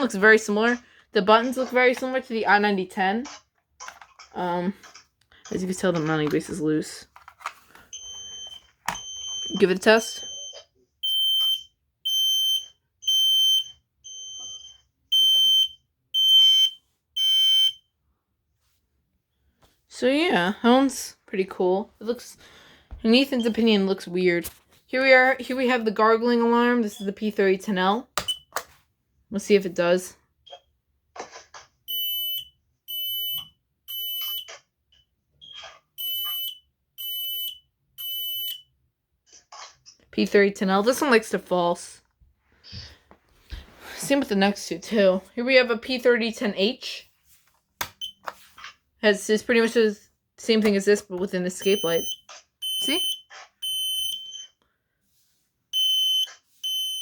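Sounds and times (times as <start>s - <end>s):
smoke alarm beeping: 7.9s - 17.8s, 23.3s - 23.8s, 31.9s - 34.5s, 36.0s - 38.7s, 47.9s - 48.3s, 51.6s - 54.6s, 55.7s - 57.0s.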